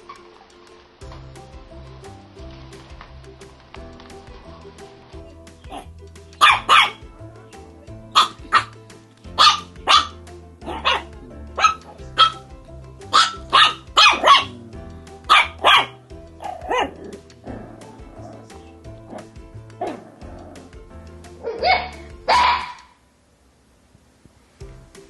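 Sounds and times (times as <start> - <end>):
background music: 0.0 - 22.9, 24.6 - 25.0
dog barking: 5.7 - 7.0, 8.2 - 8.8, 9.4 - 12.4, 13.1 - 14.7, 15.3 - 17.1, 21.4 - 23.0
dog yelping: 5.7 - 7.0, 8.2 - 8.8, 9.4 - 12.4, 13.1 - 14.7, 15.3 - 17.1, 21.4 - 23.0.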